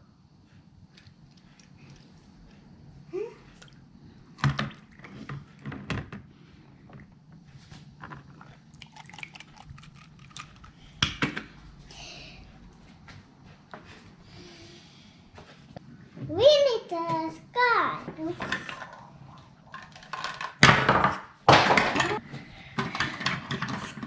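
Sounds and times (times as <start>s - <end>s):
plastic toys clicking and knocking: 19.7s - 22.2s, 22.8s - 24.0s.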